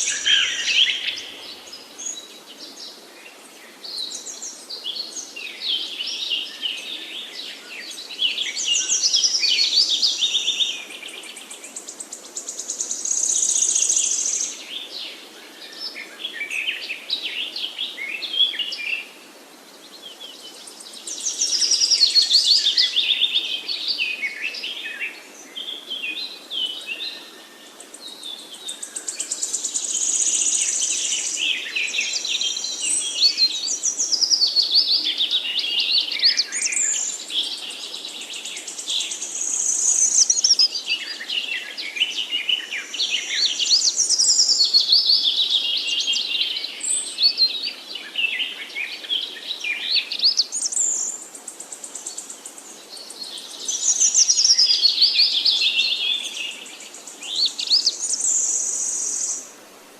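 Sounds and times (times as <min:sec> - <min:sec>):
songbirds singing: 0:00.0 - 0:59.9.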